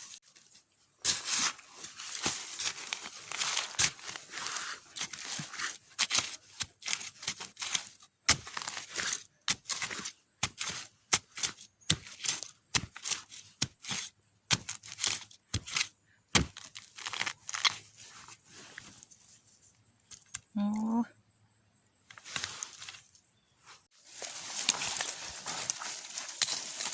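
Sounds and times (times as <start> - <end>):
dry leaves crackling and rustling: 1.1 - 5.8, 24.0 - 26.9
twigs snapping: 16.5 - 17.8, 24.2 - 26.9.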